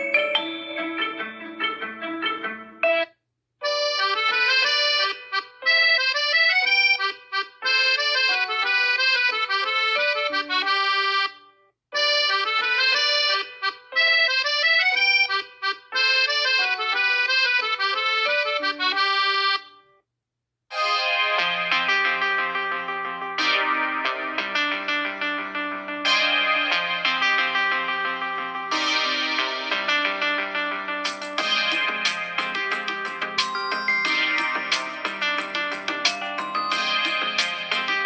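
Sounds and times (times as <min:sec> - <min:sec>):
different ringtone: 0:00.0 - 0:05.2, 0:20.7 - 0:22.6, 0:28.6 - 0:38.0
phone ringtone melody: 0:00.0 - 0:05.2, 0:08.0 - 0:11.3, 0:20.7 - 0:38.0.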